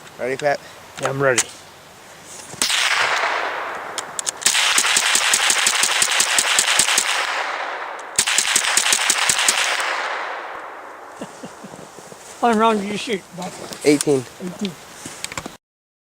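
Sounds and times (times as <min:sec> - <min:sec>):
rifle rapid fire: 0:02.6 - 0:10.9.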